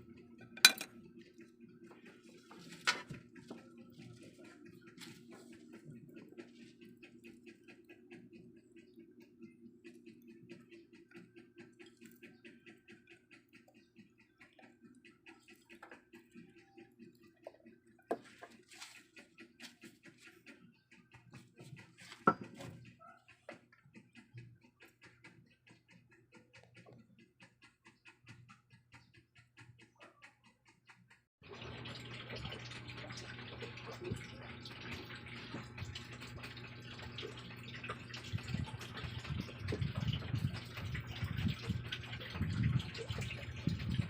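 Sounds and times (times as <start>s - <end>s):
soup bubbling in a pot: 31.4s - 44.0s.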